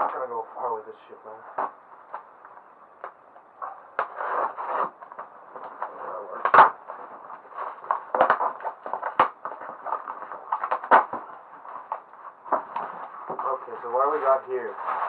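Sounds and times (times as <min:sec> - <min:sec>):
packaging scraping and rustling: 0:03.6 - 0:15.0.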